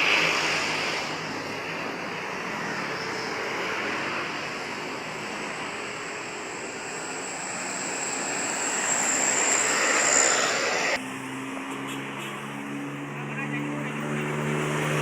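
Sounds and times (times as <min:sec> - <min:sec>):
thin high whine: 0:00.0 - 0:11.0
bus passing by: 0:00.0 - 0:15.0.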